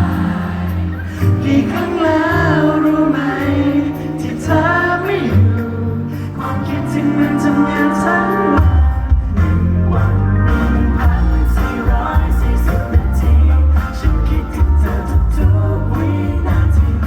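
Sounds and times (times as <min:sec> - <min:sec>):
live band playing pop ballad: 0:00.0 - 0:17.0
person singing: 0:00.0 - 0:17.0
heavy bass and drums: 0:08.6 - 0:17.0.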